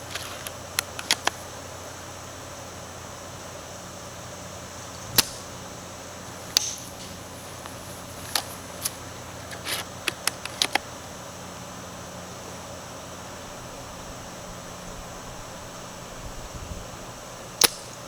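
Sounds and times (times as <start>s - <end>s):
rifle bolt clicks and clacks: 0.1s - 1.4s, 6.6s - 10.9s
spring rifle shot snap: 5.1s - 5.6s, 6.4s - 10.9s, 17.6s - 18.0s.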